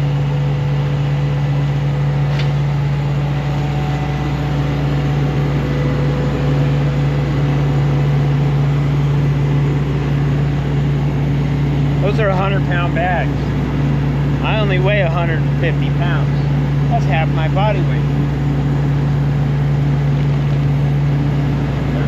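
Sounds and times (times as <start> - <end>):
air compressor engine drone: 0.0 - 22.0.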